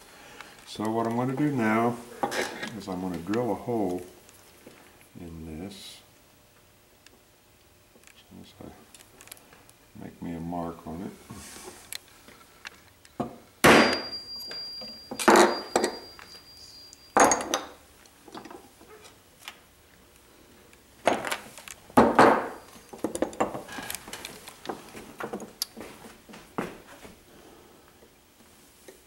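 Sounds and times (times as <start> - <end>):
metal tools knocking and clinking: 13.8 - 16.5, 17.1 - 18.6, 22.0 - 23.7.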